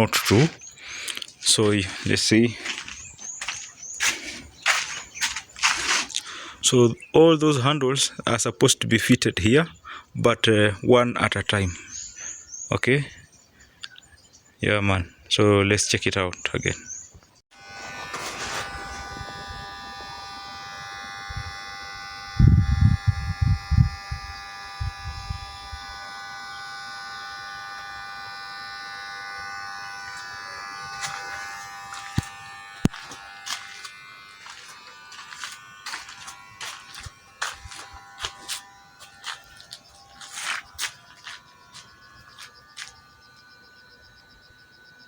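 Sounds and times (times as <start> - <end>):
small electric motor humming: 0.0 - 6.7, 17.5 - 45.0.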